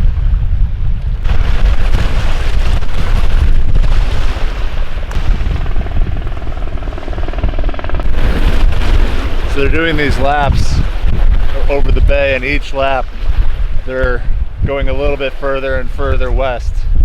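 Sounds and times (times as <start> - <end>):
wind on microphone: 0.0 - 17.0
helicopter rotor beat: 3.8 - 11.1.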